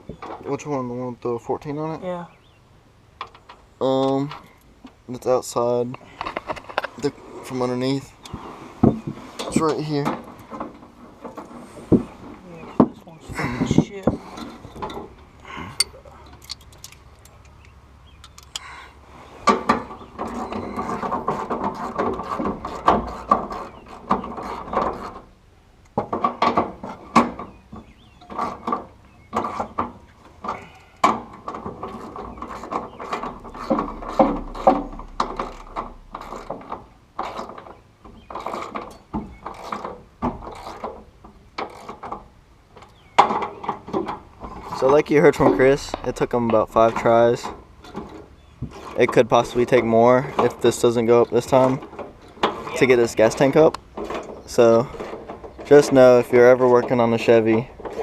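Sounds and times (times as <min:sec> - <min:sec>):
metal clicks: 0:14.4 - 0:18.7.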